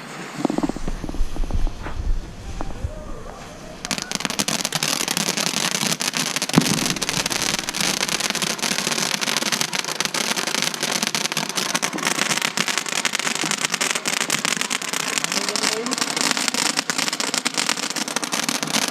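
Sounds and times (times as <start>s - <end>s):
firecrackers popping: 0.0s - 18.9s
loud firecracker bang: 0.4s - 9.5s.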